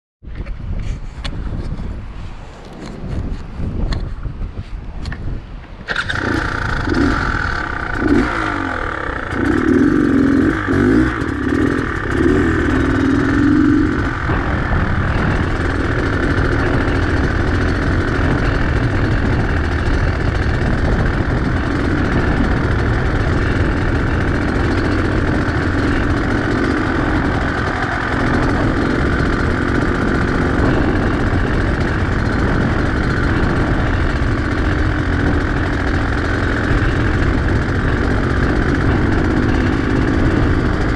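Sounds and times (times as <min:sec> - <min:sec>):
two-stroke motorcycle engine: 0:05.0 - 0:40.9.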